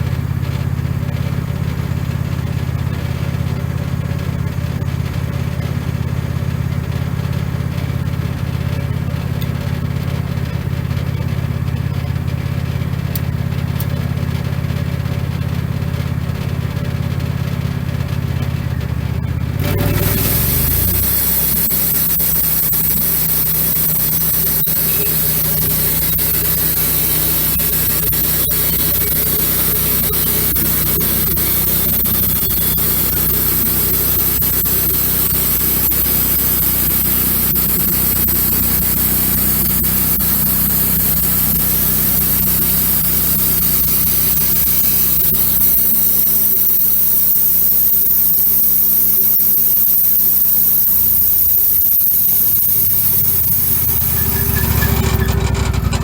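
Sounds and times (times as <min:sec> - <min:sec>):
band sawmill engine hum: 0:16.2 - 0:56.0
high saw hiss: 0:19.6 - 0:55.8.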